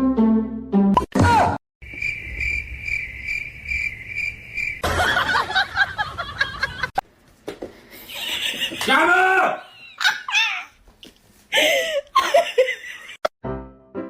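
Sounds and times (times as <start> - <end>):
cricket chirping: 1.8 - 6.0.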